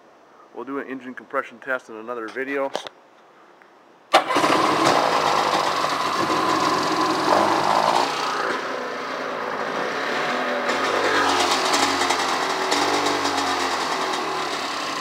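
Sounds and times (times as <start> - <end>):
two-stroke engine running: 4.2 - 15.0.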